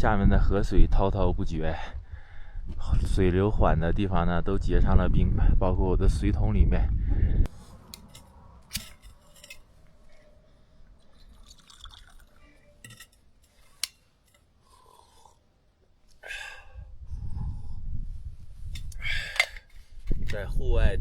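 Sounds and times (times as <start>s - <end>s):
ice clinking in water: 11.0s - 13.6s.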